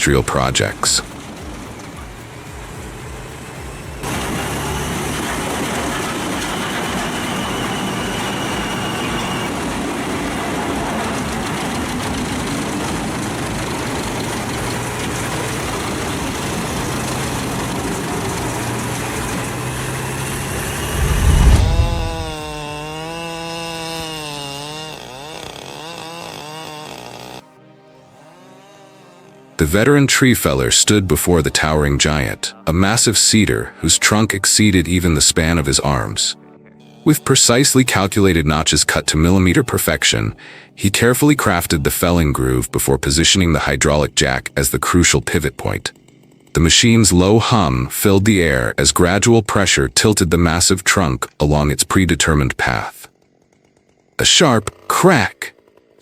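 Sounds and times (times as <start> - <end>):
engine note rising and falling: 0.0 - 26.8
wood chipper grinding: 0.0 - 27.5, 37.0 - 56.0
heavy low thud: 20.8 - 22.7.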